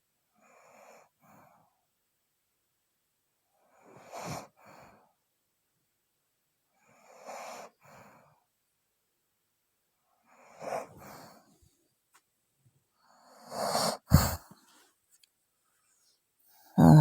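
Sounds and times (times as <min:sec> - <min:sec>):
woman snoring: 0:13.5 - 0:14.4, 0:16.7 - 0:17.0.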